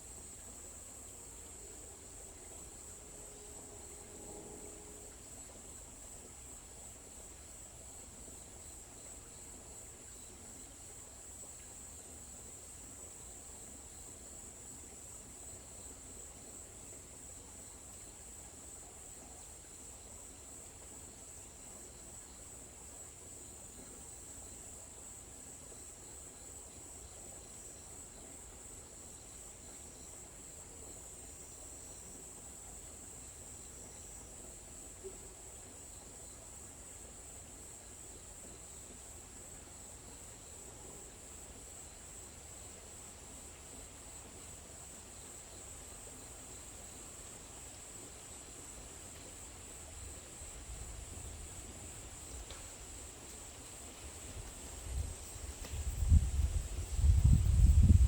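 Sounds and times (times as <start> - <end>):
insects chirring: 17.2 - 58.0.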